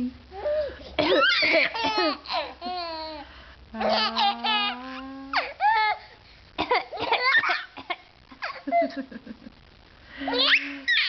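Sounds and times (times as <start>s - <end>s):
adult coughing: 0.9s - 2.2s
baby laughing: 1.0s - 3.2s, 10.3s - 11.0s.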